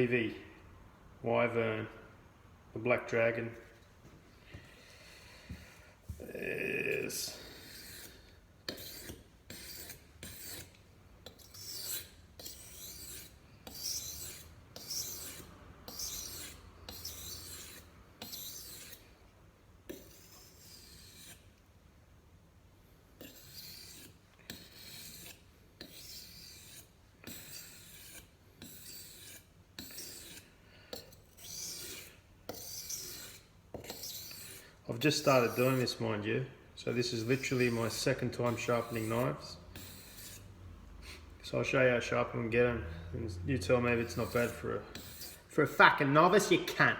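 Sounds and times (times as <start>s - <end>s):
knife rasping on whetstone: 7.1s - 19.1s, 19.9s - 21.5s, 23.2s - 36.0s, 37.0s - 40.5s, 44.0s - 45.8s.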